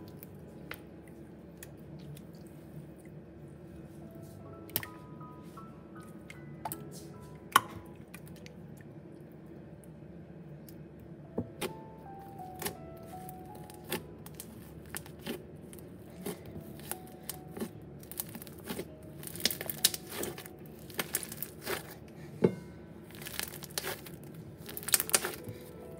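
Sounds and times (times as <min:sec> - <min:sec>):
faint background music: 0:00.0 - 0:25.9
slime crackling and popping: 0:11.6 - 0:22.0, 0:23.0 - 0:25.9.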